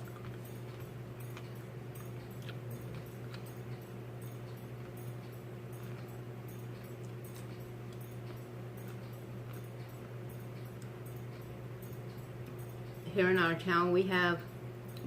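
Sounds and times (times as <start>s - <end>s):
mouth clicks and chewing: 0.0s - 13.0s
low electrical hum: 0.0s - 15.0s.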